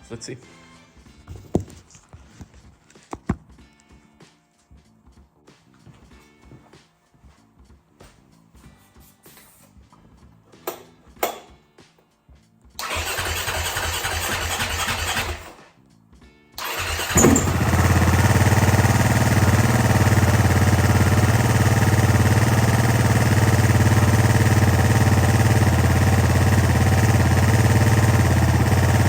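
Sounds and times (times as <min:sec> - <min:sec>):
motorcycle engine cranking: 0:12.8 - 0:15.6, 0:16.6 - 0:29.0
motorcycle engine running: 0:16.6 - 0:29.0.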